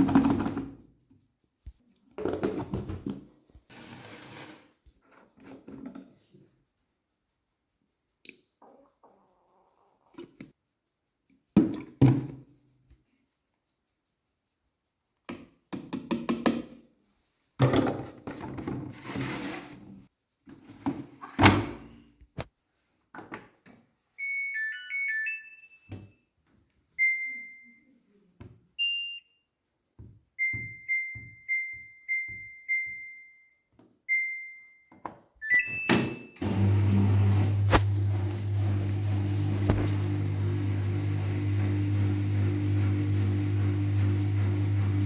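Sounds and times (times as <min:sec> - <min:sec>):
control panel button beeps: 0:27.0 - 0:27.8, 0:28.8 - 0:29.2, 0:30.4 - 0:33.4, 0:35.4 - 0:36.4
washing machine power-on tune: 0:35.4 - 0:45.0
washing machine low hum: 0:36.4 - 0:45.0.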